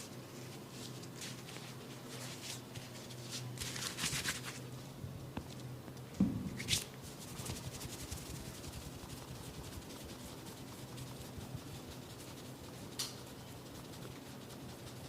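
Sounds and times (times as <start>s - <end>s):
hair crackling and rustling: 0.1s - 4.6s
soft thump: 6.2s - 6.6s.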